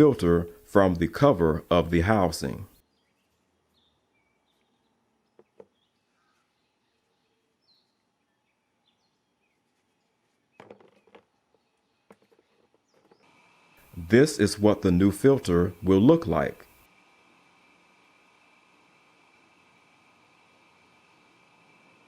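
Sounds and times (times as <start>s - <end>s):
faint bird chirps: 2.7s - 13.3s.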